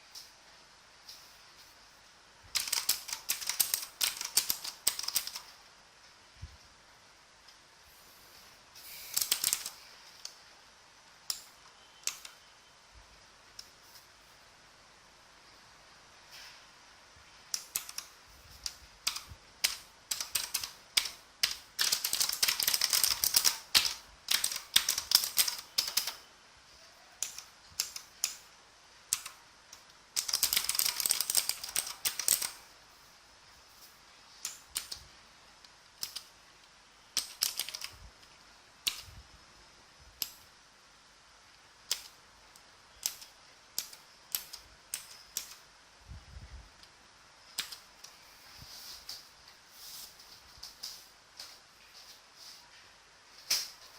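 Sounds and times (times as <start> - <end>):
clicky mechanical keyboard typing: 2.5 - 5.5, 9.1 - 9.8, 11.3 - 12.4, 17.6 - 26.2, 27.2 - 28.5, 29.1 - 29.4, 30.1 - 32.6, 36.0 - 36.3, 37.2 - 38.0.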